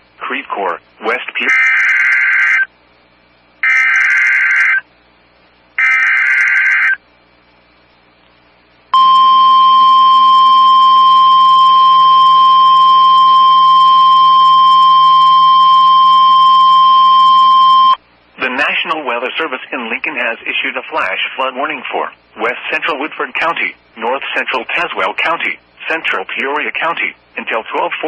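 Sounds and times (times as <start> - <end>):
warbling digital screeches: 3.6 - 4.8, 5.8 - 7.0
steady warning alarm tone: 9.0 - 18.0.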